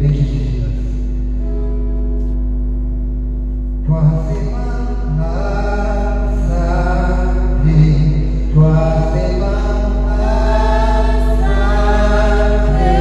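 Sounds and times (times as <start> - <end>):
electrical hum: 0.0 - 13.0
sustained accompanying notes: 8.6 - 13.0
choir singing a hymn: 9.0 - 13.0.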